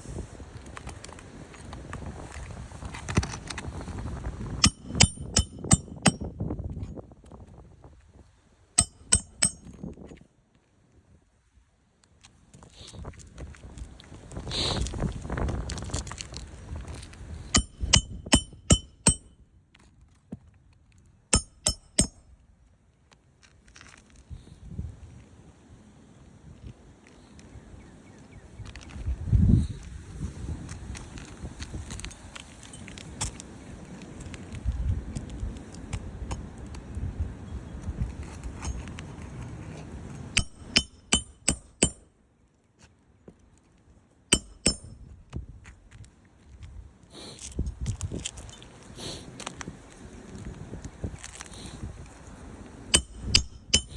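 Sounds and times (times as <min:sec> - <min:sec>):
hammer striking roofing nails: 0:04.6 - 0:06.3, 0:08.8 - 0:09.8, 0:17.6 - 0:19.3, 0:21.4 - 0:22.2, 0:40.4 - 0:42.0, 0:44.4 - 0:45.0, 0:53.0 - 0:53.9.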